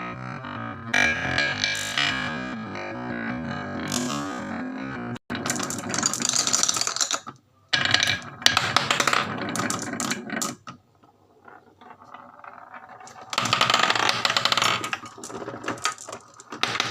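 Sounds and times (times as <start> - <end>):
marbles rattling down wooden run: 5.3 - 10.6, 11.5 - 16.9.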